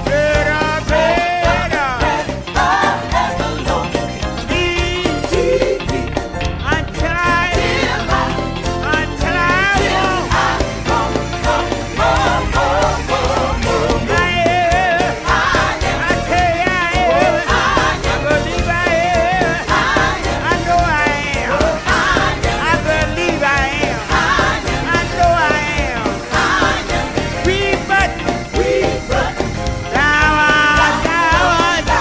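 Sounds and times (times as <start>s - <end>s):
full band with steady beat: 0.0s - 32.0s
person singing with vibrato: 0.0s - 32.0s.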